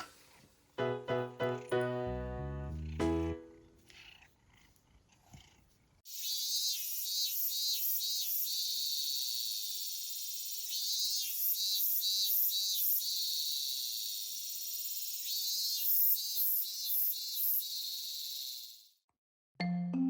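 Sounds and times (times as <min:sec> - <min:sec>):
crickets chirping: 0:06.1 - 0:18.9.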